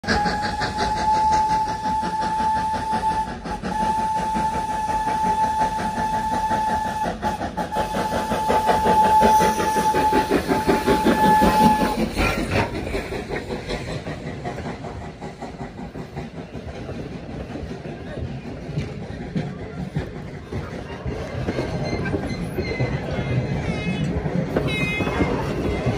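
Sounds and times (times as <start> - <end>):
train whistle blasts: 0.0 - 12.0, 24.6 - 25.6
train clattering: 0.0 - 25.9.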